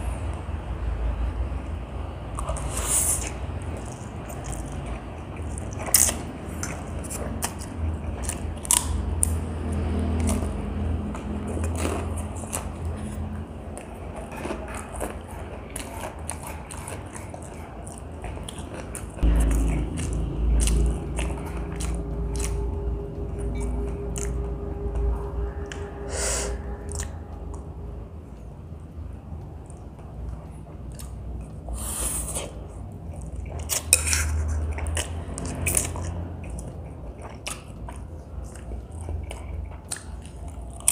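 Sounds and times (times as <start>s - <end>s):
chewing and biting: 2.3s - 25.9s, 29.6s - 40.9s
low rumble: 19.2s - 31.7s.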